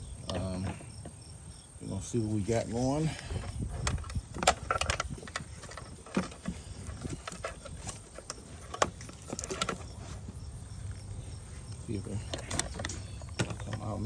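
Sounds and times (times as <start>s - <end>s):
wind rumbling on microphone: 0.0s - 14.0s
light clicks and knocks: 3.2s - 10.4s, 11.7s - 14.0s.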